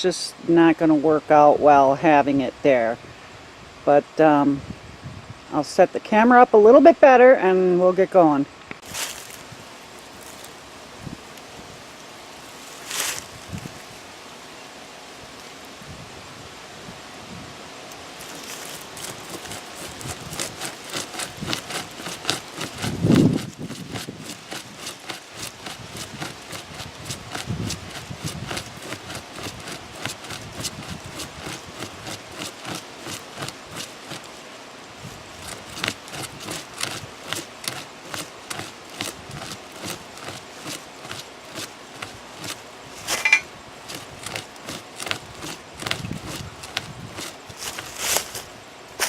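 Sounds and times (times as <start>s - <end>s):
hand saw rasping through wood: 18.3s - 34.4s, 35.0s - 48.4s
sharp wood crack: 18.3s - 34.4s, 35.3s - 49.0s.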